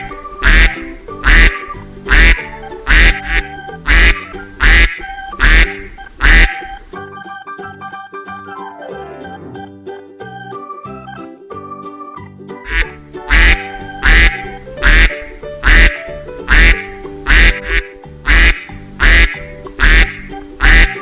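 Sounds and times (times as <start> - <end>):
keyboard music: 0.0 - 21.0
duck quacking loudly: 0.4 - 6.8, 12.7 - 21.0.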